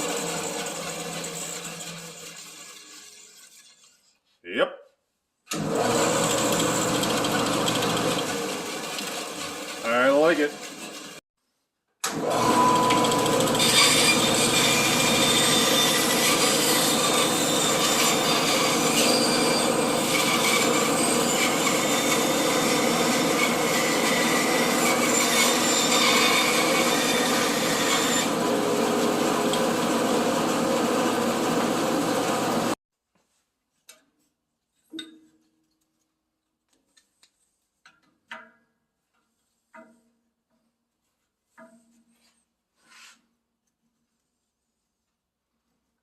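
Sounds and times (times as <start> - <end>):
bandsaw motor hum: 5.5 - 11.2, 12.1 - 32.8.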